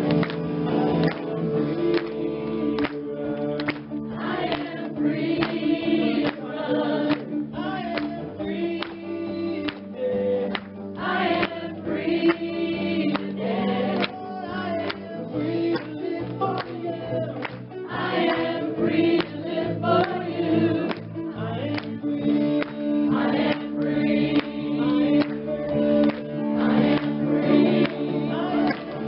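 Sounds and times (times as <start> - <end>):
gospel choir singing over a beat: 0.0 - 29.0.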